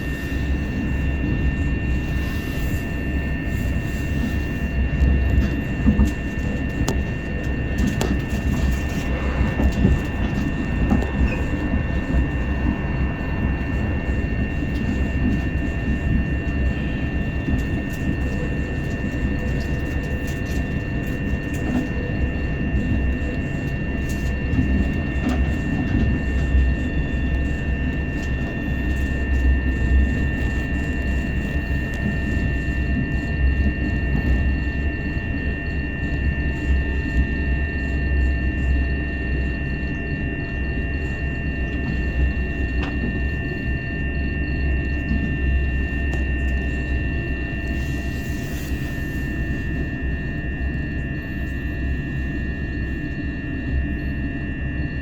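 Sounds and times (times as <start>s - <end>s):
high-pitched whine: 0.0s - 55.0s
train wheels rumbling on track: 2.0s - 34.6s.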